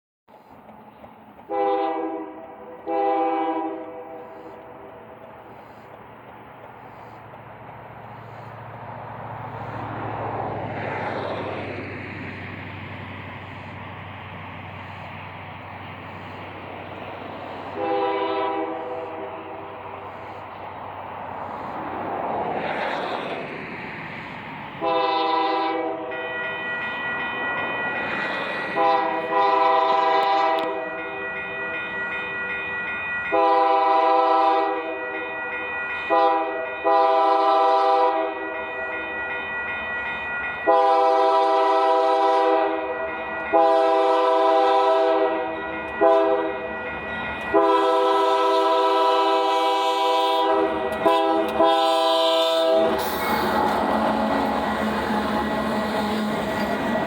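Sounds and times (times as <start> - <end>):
train rumbling on rails: 0.3 - 57.0
locomotive air horn blasts: 1.5 - 4.9, 17.7 - 19.6, 24.8 - 26.2, 28.8 - 30.8, 33.3 - 34.9, 36.1 - 38.4, 40.6 - 42.9, 43.5 - 46.6, 47.5 - 57.0.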